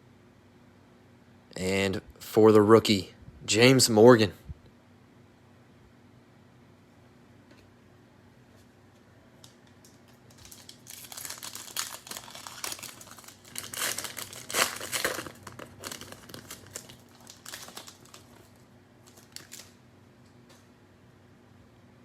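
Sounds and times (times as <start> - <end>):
cellophane wrapper crinkling: 9.4 - 19.8.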